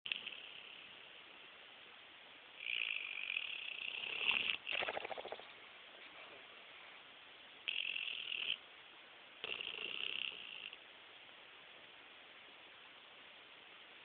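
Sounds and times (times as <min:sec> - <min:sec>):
dog snoring: 0:00.1 - 0:00.9, 0:02.6 - 0:05.0, 0:07.7 - 0:08.6, 0:09.4 - 0:10.8.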